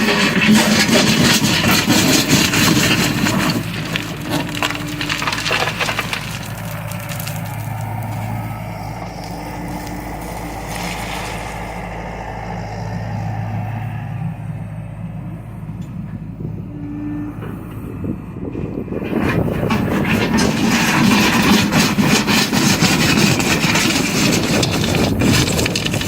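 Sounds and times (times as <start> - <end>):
wood cracking and splintering: 0.0 - 11.6, 19.0 - 26.0
excavator engine running: 0.0 - 26.0.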